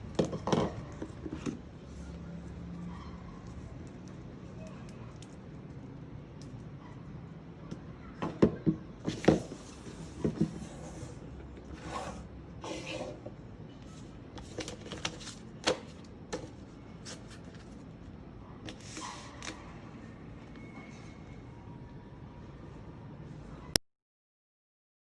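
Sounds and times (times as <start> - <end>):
packaging rustling: 14.4 - 17.9.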